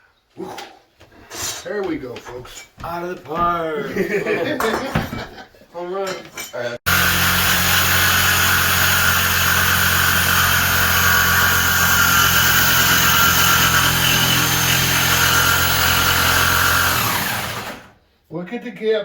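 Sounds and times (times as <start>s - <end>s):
electric jigsaw cutting: 6.9s - 18.0s.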